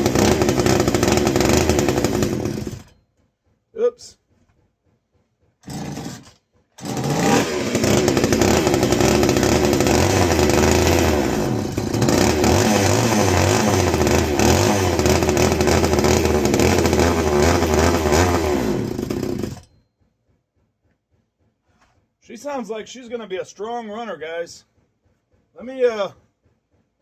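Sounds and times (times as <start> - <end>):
chainsaw engine revving: 0.0 - 2.9, 5.6 - 19.7.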